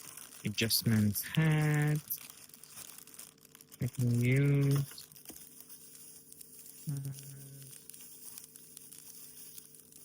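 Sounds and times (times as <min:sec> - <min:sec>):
packaging rustling and crinkling: 0:00.0 - 0:10.0
person humming: 0:06.9 - 0:07.7.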